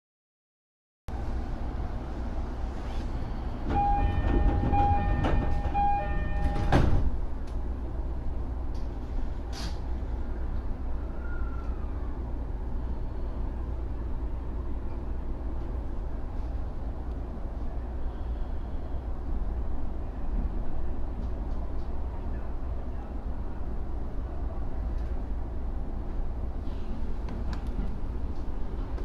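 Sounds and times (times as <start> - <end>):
train doors thumping shut: 3.6 - 7.2
door-closing chime beeping: 3.7 - 7.0.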